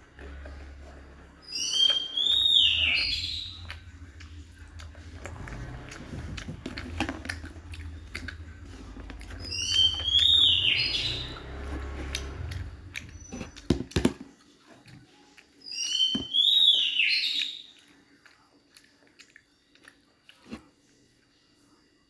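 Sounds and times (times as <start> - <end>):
bird whistled call: 1.4 - 3.9, 9.1 - 12.4, 15.7 - 17.7.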